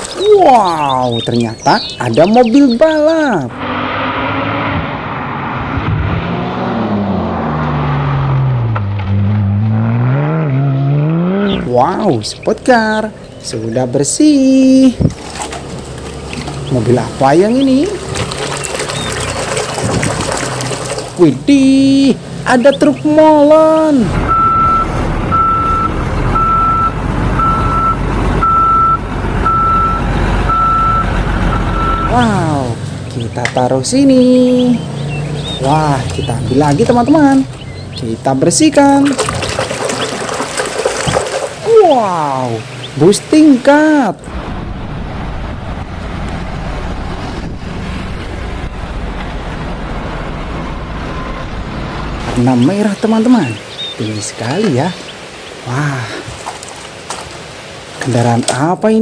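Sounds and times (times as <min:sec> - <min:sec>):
running water splashing: 0:00.0 - 0:03.3, 0:11.6 - 0:24.8, 0:31.8 - 0:44.2, 0:52.1 - 0:59.0
truck reversing alarm beeping: 0:24.2 - 0:32.6
low engine rumble: 0:44.2 - 0:58.1.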